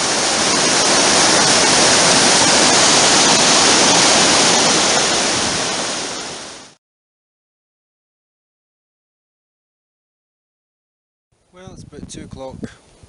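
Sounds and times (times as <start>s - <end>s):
fast-flowing river water: 0.0s - 6.8s.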